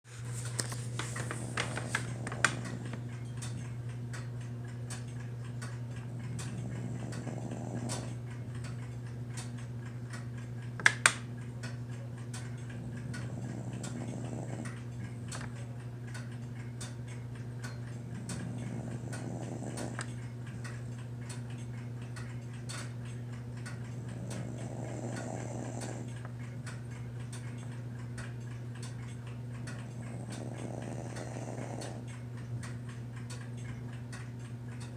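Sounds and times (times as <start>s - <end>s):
steady low hum: 0.1s - 34.9s
light ticks: 0.5s - 34.9s
soft snoring: 1.1s - 3.8s, 6.1s - 8.3s, 12.7s - 15.4s, 18.0s - 20.8s, 23.8s - 26.2s, 29.7s - 32.2s
sharp clicks: 7.8s - 11.8s.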